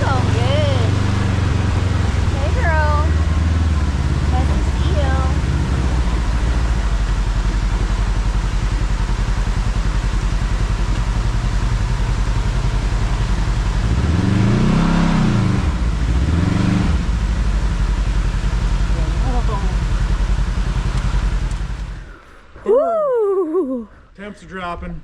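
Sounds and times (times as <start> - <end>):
utility vehicle engine running: 0.0 - 22.6
wind and road noise: 0.0 - 22.7.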